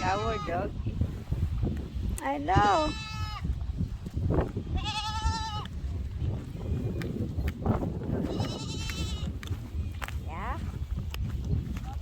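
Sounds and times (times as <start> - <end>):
goats bleating: 0.0 - 0.7, 2.6 - 3.4, 4.6 - 5.7, 8.3 - 9.3.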